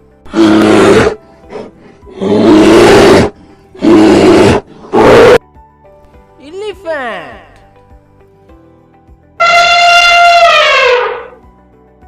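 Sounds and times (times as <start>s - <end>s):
faint background music: 0.0s - 12.0s
bear grunting: 0.2s - 5.4s
bear roaring: 0.2s - 5.4s, 9.8s - 11.4s.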